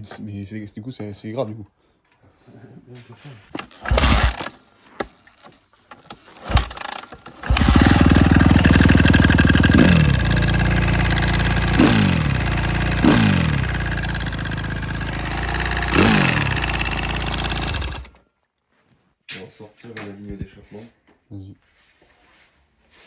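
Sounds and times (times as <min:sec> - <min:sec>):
clicks before engine start: 0:03.6 - 0:04.6, 0:05.9 - 0:08.2
motorcycle engine revving: 0:03.8 - 0:04.5, 0:06.4 - 0:18.2.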